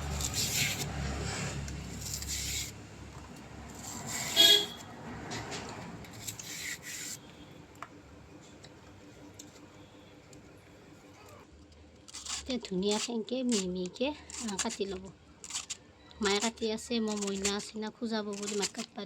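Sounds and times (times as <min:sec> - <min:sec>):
knife scraping stems: 0:00.0 - 0:07.4, 0:12.0 - 0:19.0.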